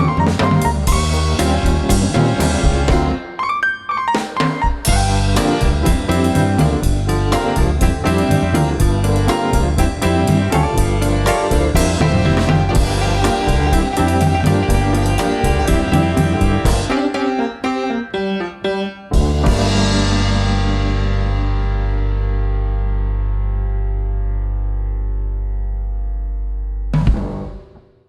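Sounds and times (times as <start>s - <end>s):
bass: 0.0s - 3.3s, 4.8s - 17.5s, 19.1s - 27.8s
drum kit: 0.0s - 17.7s, 19.1s - 22.7s, 27.0s - 28.0s
electric piano: 0.0s - 26.9s.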